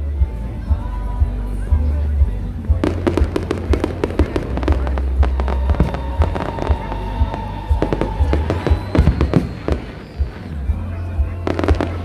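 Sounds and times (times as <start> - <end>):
deep low booming: 0.0 - 12.0
fireworks bangs and crackles: 2.4 - 12.0.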